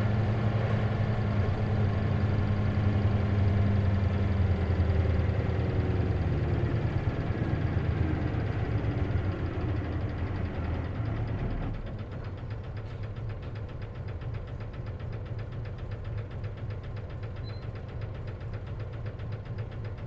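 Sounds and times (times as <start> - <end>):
bus engine idling with rattle-knock: 0.0 - 20.0.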